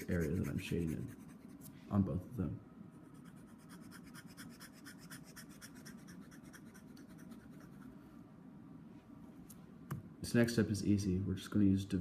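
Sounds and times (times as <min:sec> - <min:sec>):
drawing tool scratching on paper: 0:00.0 - 0:01.7, 0:03.1 - 0:07.9.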